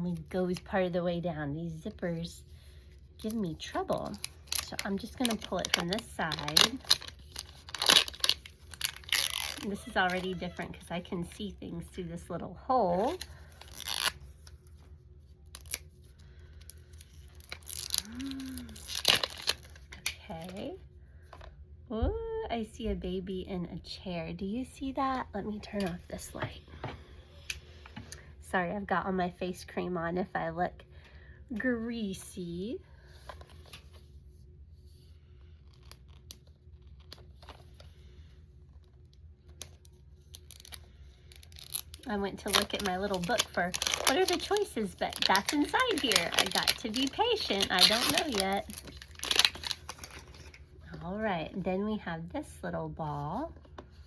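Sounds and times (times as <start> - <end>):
steady low hum: 0.0 - 54.0
packaging rustling and tearing: 3.2 - 11.1, 13.0 - 20.6, 38.7 - 51.0
person humming: 18.0 - 18.8.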